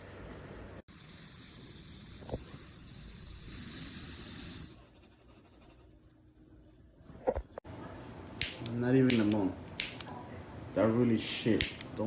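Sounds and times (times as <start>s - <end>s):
butane torch hissing: 0.0s - 4.8s.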